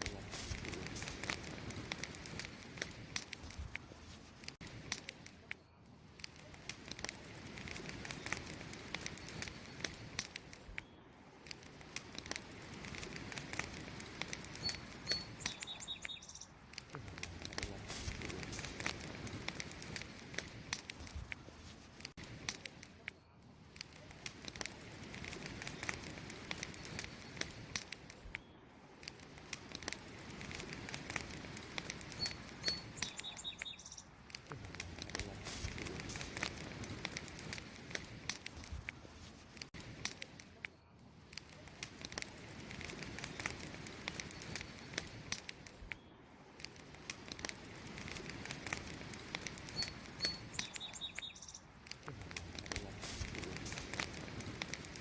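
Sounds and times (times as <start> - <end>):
campfire crackling and popping: 0.0 - 55.0
high chirp: 14.6 - 16.6, 32.1 - 34.2.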